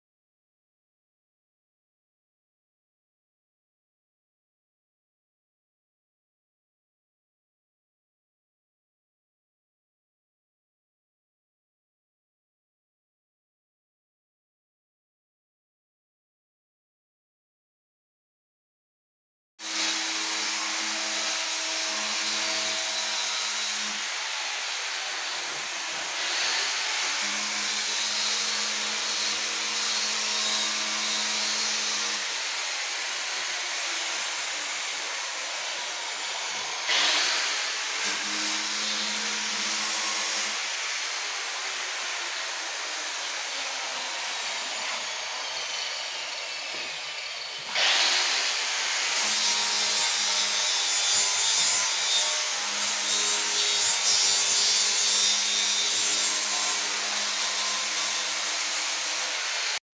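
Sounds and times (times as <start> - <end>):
electric power tool whirring: 19.6 - 50.4.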